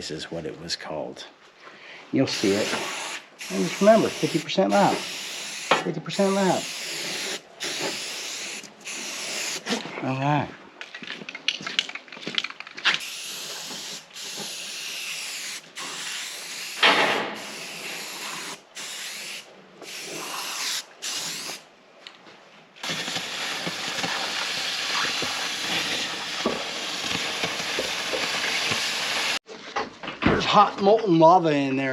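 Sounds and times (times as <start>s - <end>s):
aerosol spray can hissing: 2.3s - 9.7s, 13.0s - 21.6s, 22.8s - 29.4s.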